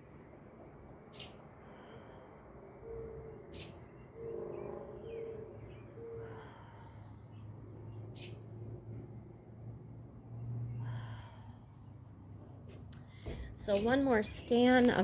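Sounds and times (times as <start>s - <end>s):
bird cooing: 4.2s - 6.6s.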